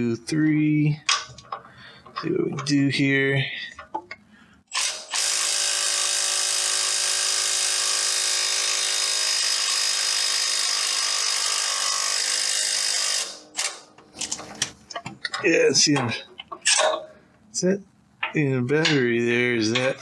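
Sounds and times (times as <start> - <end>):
impact wrench hammering: 4.8 - 13.4.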